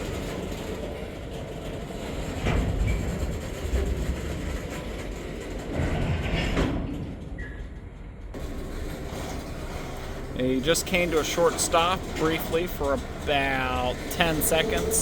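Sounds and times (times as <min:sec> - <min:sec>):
freight train rumbling past: 0:00.0 - 0:15.0
train cars knocking: 0:00.0 - 0:15.0
high-pitched squeal: 0:08.4 - 0:15.0.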